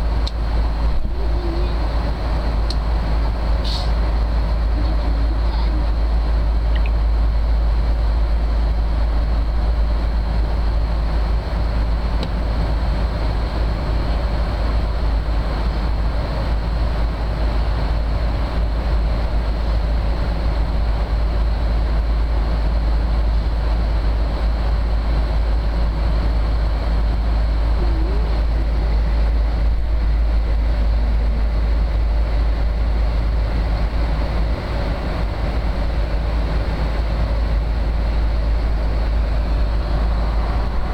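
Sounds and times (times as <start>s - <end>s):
airliner cabin roar: 0.0s - 40.9s
faint high tone: 1.1s - 1.9s, 27.8s - 28.9s.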